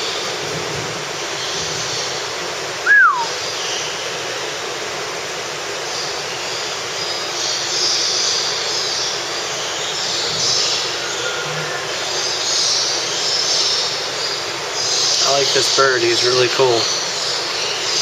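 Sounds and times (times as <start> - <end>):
bird whistling: 2.8 - 3.4.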